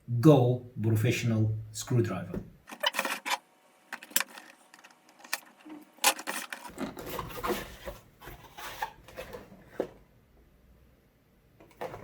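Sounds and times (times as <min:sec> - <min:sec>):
packaging rubbing and scraping: 0:02.7 - 0:09.8.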